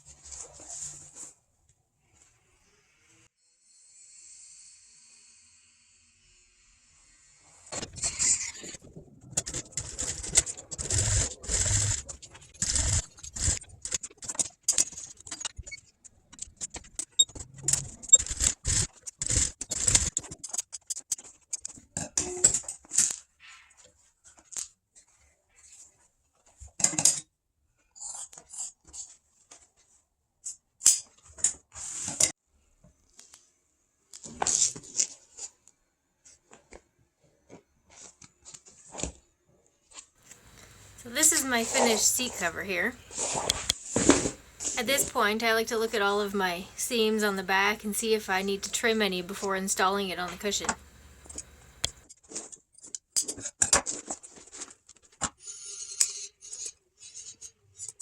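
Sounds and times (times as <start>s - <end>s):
vinyl material rustling and scraping: 0.0s - 2.5s, 7.6s - 21.9s, 22.6s - 26.8s, 31.1s - 52.9s, 53.8s - 55.9s.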